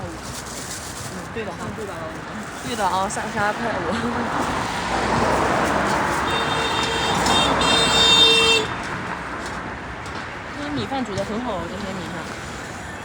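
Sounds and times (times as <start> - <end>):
vehicle passing by: 2.2 - 9.9
vehicle horn sounding: 6.2 - 8.8.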